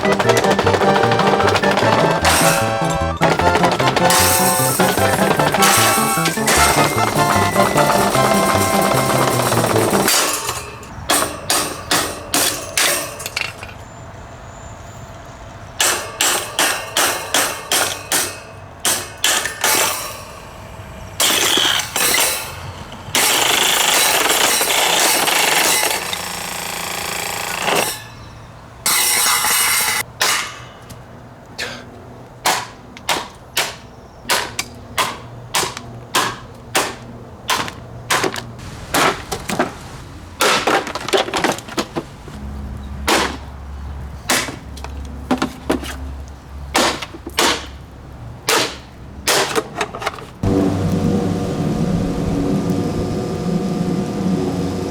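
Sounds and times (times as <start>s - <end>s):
hard blows smashing fan: 0.0s - 13.6s, 36.2s - 42.4s, 50.4s - 54.9s
crunching breaking noise: 37.6s - 42.4s.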